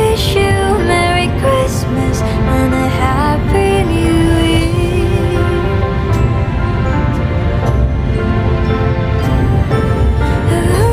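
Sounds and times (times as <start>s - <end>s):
held note over low accompaniment: 2.8s - 10.9s.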